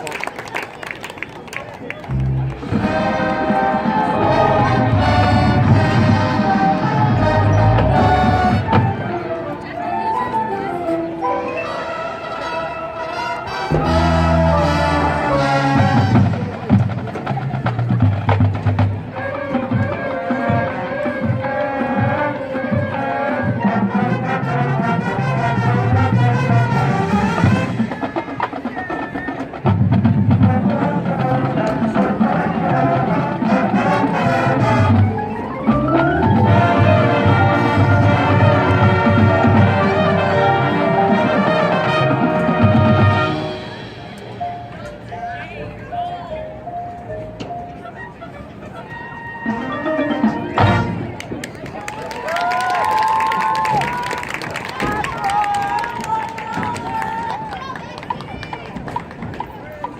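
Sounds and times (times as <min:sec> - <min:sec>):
drums: 0:02.1 - 0:09.4, 0:13.7 - 0:45.1, 0:49.5 - 0:51.6
brass instruments: 0:02.1 - 0:44.8, 0:48.6 - 0:51.6
mallet percussion: 0:35.2 - 0:38.0.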